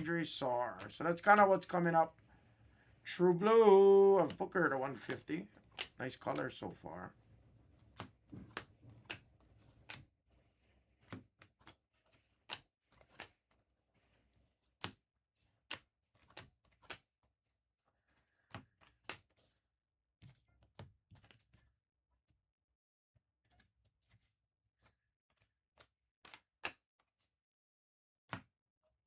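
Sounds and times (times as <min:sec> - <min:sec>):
cards clicking on a table: 0:03.6 - 0:06.8, 0:07.8 - 0:10.0.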